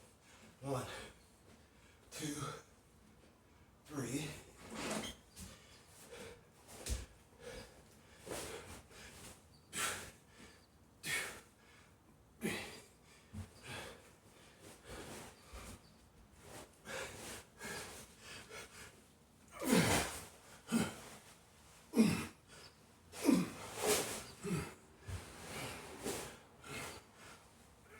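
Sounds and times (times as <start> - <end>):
man grunting exhales: 19.6 - 21.0, 23.2 - 23.6, 24.4 - 24.8.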